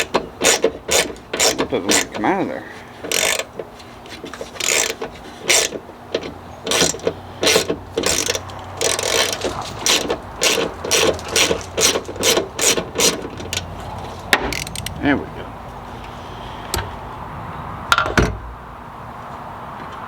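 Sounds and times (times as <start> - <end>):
ratcheting wrench clicking: 0.0 - 2.2, 3.0 - 3.6, 4.4 - 13.7, 14.5 - 15.0.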